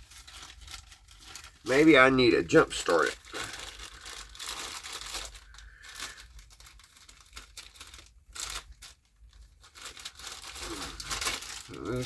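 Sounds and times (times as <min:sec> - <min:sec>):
bag crinkling and rustling: 0:00.0 - 0:12.0
small clicks and crackles: 0:03.1 - 0:12.0.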